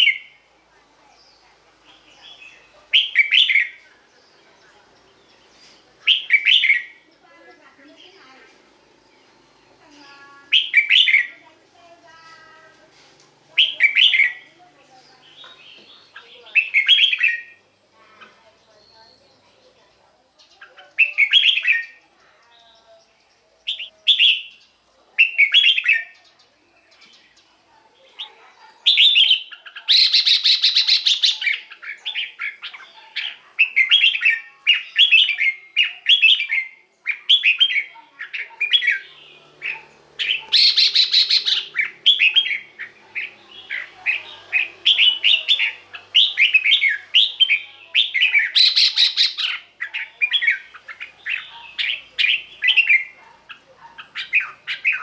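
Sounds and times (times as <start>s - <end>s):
bird singing whistled phrases: 2.3s - 3.8s, 6.0s - 7.0s, 10.4s - 11.3s, 13.6s - 14.5s, 16.5s - 17.6s, 21.0s - 22.0s, 28.9s - 32.6s, 33.6s - 39.1s, 40.2s - 53.1s.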